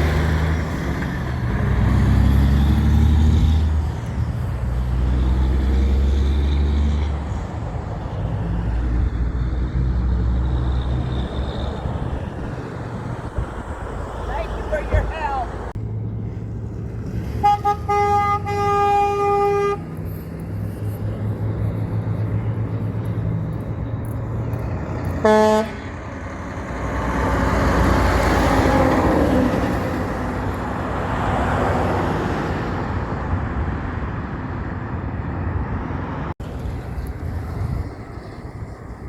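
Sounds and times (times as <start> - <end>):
low engine hum: 0.0 - 31.5, 32.5 - 39.0
passing truck: 0.0 - 39.0
truck horn: 17.3 - 20.2, 25.2 - 26.0.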